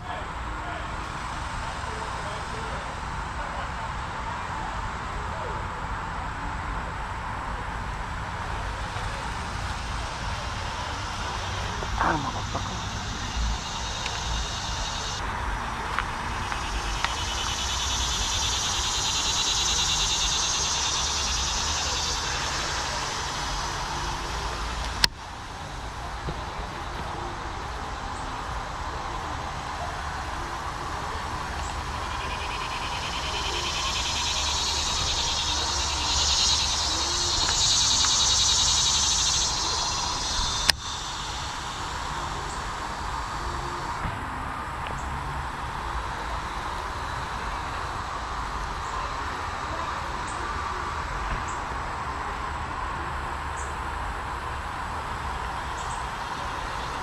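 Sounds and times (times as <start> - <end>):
steady low rumble: 0.0 - 52.6
pulsing insect buzz: 6.5 - 26.5, 27.1 - 51.6.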